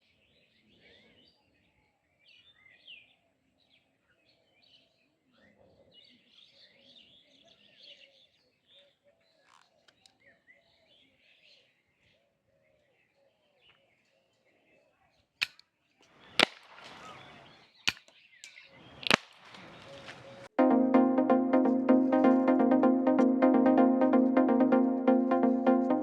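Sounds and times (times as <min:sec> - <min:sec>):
faint birds chirping: 0:00.0 - 0:20.5
lower repeated bird calls: 0:16.1 - 0:20.5.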